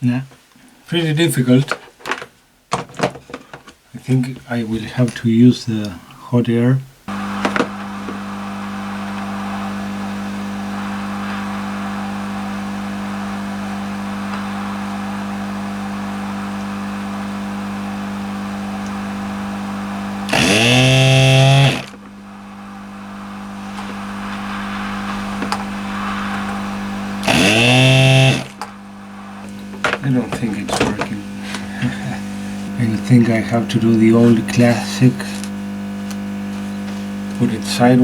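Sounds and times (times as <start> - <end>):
motor whirring up in pitch: 7.1 - 33.1
hot air tool blowing: 7.1 - 37.6.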